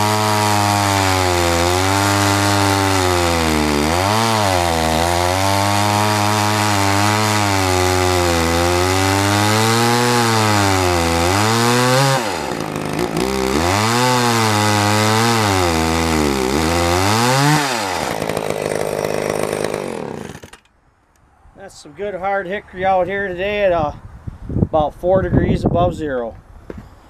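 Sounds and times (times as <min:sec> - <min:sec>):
chainsaw cutting wood: 0:00.0 - 0:20.7.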